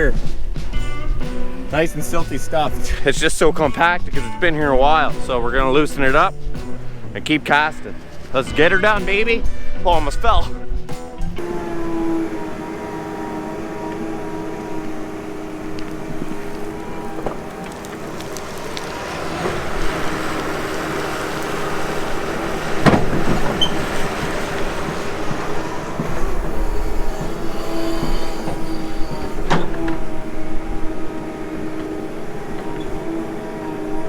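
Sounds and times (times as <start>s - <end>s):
excavator engine and hydraulics: 0.0s - 34.0s
steady whine: 0.0s - 34.0s
sharp clunks: 20.4s - 30.2s.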